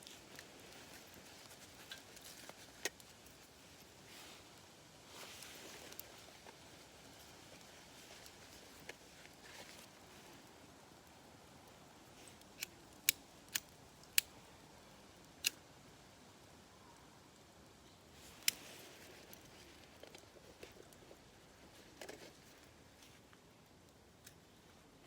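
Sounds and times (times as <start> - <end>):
wood fire crackling and popping: 0.0 - 10.1
faint hiss: 0.0 - 25.0.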